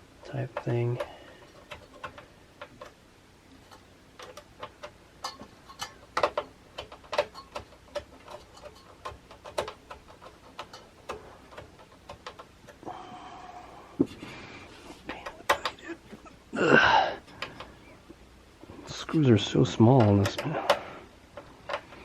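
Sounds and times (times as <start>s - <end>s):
small metal parts clicking and tapping: 0.2s - 12.8s, 19.7s - 22.0s.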